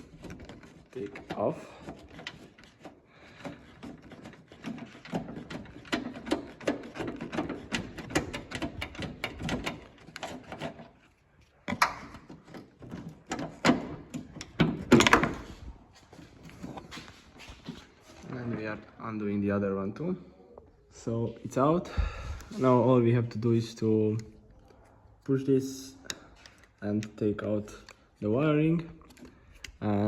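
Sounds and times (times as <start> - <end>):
metallic knocks and clatter: 3.4 - 11.0, 11.7 - 15.6.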